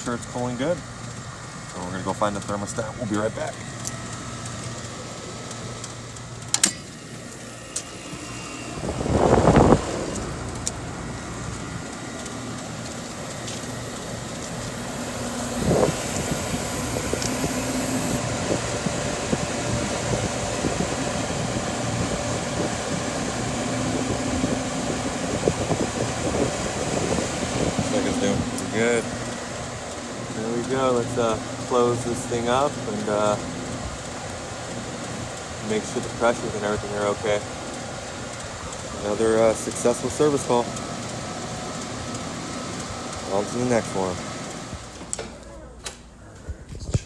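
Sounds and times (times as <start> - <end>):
air conditioning fans humming: 0.0 - 47.0
sharp click: 6.5 - 6.9.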